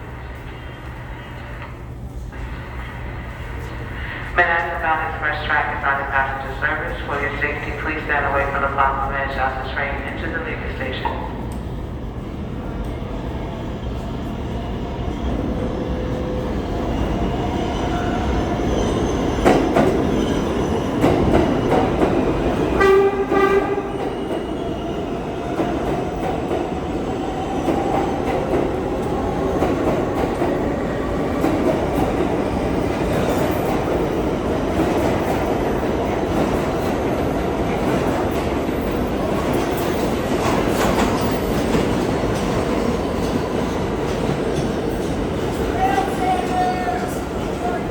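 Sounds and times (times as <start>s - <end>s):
subway train wheels rumbling on rails: 0.0s - 47.9s
train horn blast: 22.8s - 23.9s.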